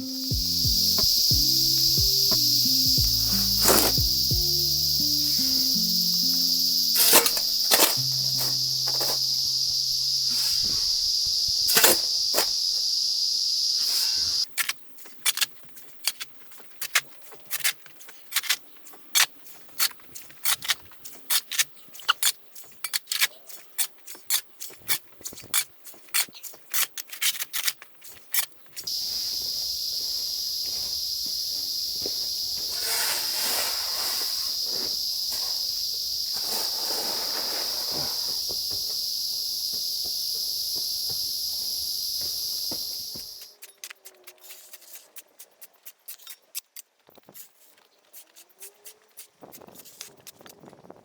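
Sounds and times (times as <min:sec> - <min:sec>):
high-pitched insect drone: 0:00.0 - 0:14.4, 0:28.9 - 0:43.5
rough hiss: 0:00.0 - 0:14.5, 0:28.9 - 0:43.5.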